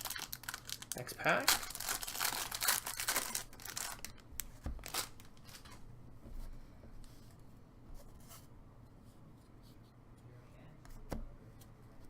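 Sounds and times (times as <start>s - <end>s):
card pack wrapper crinkling: 0.0s - 5.6s.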